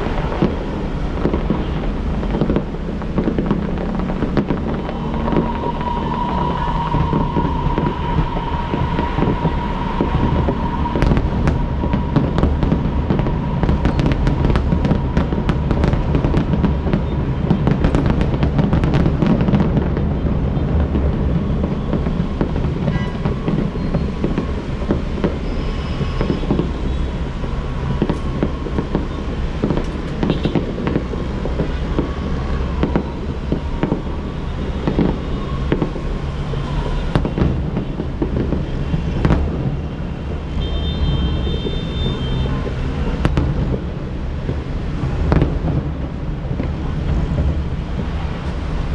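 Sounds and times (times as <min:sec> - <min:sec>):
low rumble: 0:00.0 - 0:18.5
fireworks bangs and crackles: 0:00.0 - 0:48.9.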